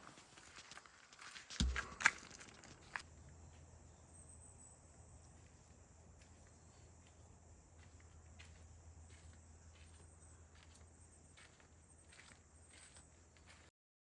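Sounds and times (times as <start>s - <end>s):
steady low hum: 2.9s - 13.7s.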